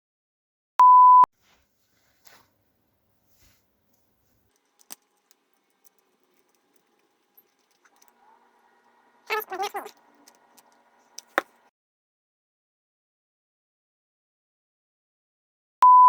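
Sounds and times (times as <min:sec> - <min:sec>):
censor bleep: 0:00.8 - 0:01.3.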